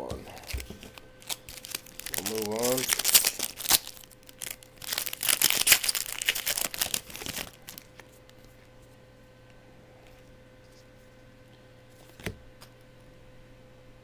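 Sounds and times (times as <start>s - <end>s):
faint steady hum: 0.0s - 14.0s
foil wrapper crinkling and tearing: 0.3s - 8.6s.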